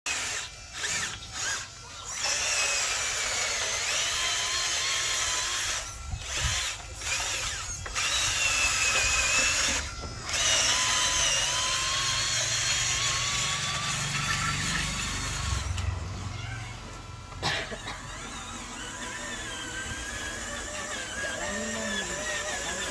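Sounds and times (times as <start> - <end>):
toy electric motors whining: 0.1 - 22.9.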